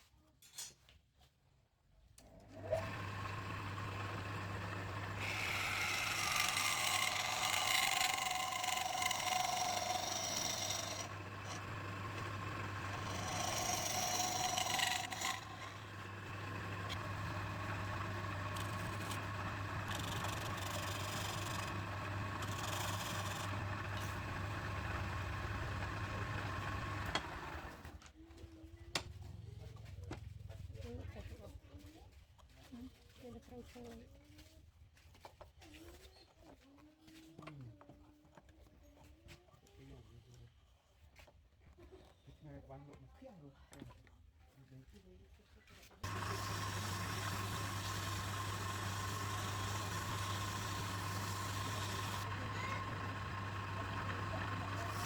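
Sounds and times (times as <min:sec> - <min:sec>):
wood lathe humming: 0:02.4 - 0:28.0, 0:46.0 - 0:55.0
turning tool scraping wood: 0:02.6 - 0:27.9, 0:46.0 - 0:55.0.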